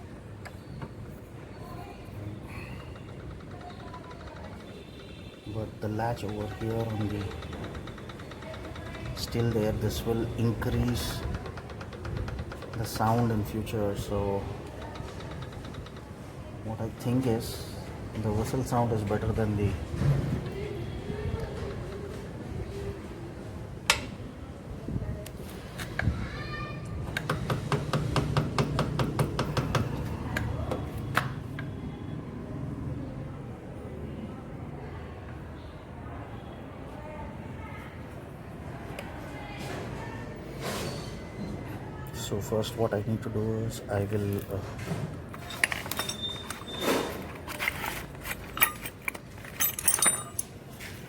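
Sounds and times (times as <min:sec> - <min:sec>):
metal hand tools clinking: 0:45.4 - 0:50.6.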